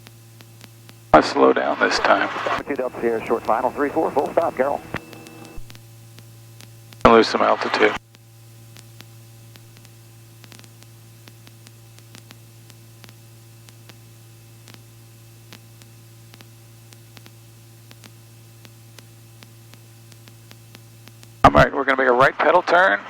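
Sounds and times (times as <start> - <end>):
static hiss: 0.1 - 5.8, 6.6 - 21.5
steady low hum: 0.3 - 5.8, 6.5 - 8.5
faint clicks: 2.8 - 5.6.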